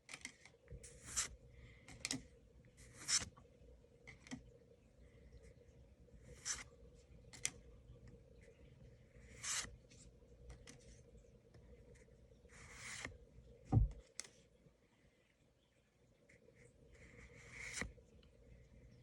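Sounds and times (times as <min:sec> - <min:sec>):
cards rubbing: 0:00.8 - 0:01.4, 0:02.8 - 0:03.3.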